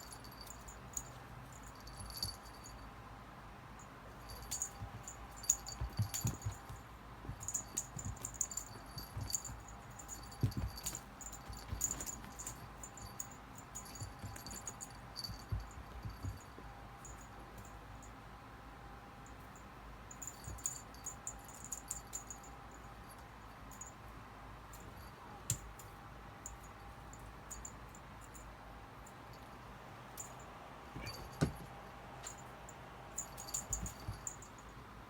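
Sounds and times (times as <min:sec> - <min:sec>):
cat bell jingling: 0:00.0 - 0:02.8, 0:04.2 - 0:17.3, 0:20.1 - 0:23.9, 0:31.0 - 0:32.4, 0:33.2 - 0:34.7
soft low thumps: 0:04.3 - 0:13.2, 0:13.8 - 0:16.6, 0:33.2 - 0:34.4.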